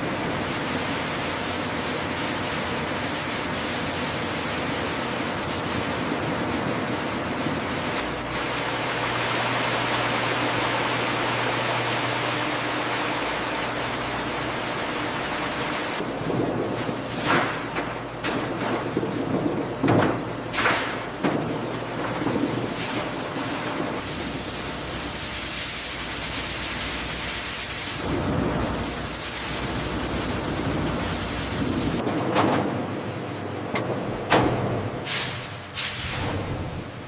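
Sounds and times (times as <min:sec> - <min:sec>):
low machine hum: 0:00.0 - 0:35.6
high-pressure water spray: 0:00.4 - 0:06.0, 0:22.7 - 0:32.0, 0:35.1 - 0:37.0.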